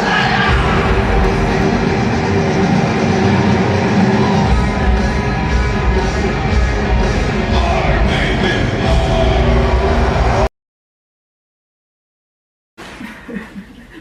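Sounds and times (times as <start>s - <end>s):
live rock band playing: 0.0s - 10.5s
deep bass: 0.5s - 10.5s
person singing: 7.4s - 10.4s.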